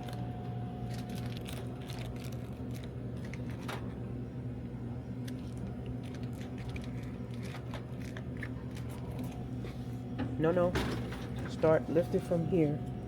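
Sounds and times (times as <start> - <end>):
low electrical hum: 0.0 - 13.0
snack packets rustling: 0.8 - 3.7, 5.2 - 9.4.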